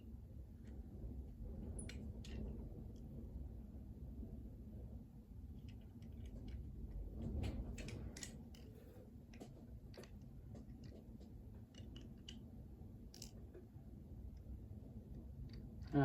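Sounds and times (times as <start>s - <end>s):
toy vehicles clicking and tapping: 5.6s - 6.7s, 7.4s - 13.7s.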